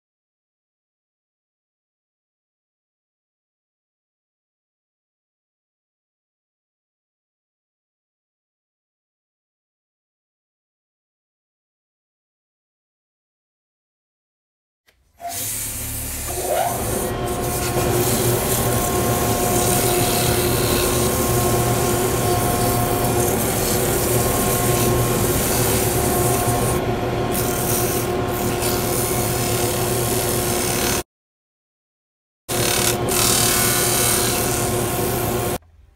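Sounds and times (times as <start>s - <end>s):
lathe and vacuum motors humming: 15.2s - 31.0s, 32.5s - 35.6s
sandpaper sanding wood: 15.3s - 26.8s, 27.4s - 31.0s, 32.5s - 35.6s.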